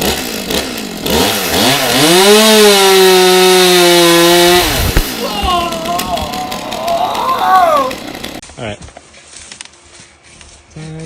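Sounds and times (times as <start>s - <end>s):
chainsaw revving: 0.0s - 8.4s.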